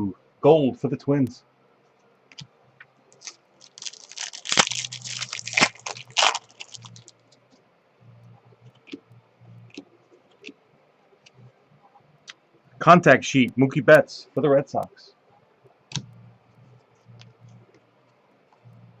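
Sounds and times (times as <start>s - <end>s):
trading cards crinkling and rustling: 3.1s - 7.5s.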